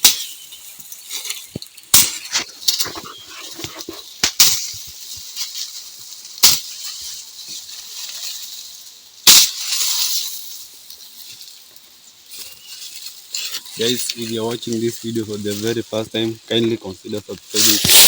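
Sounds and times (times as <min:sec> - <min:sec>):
stalks cracking: 0:00.0 - 0:08.7, 0:16.5 - 0:18.0
dry stalks and leaves rustling: 0:00.0 - 0:18.0.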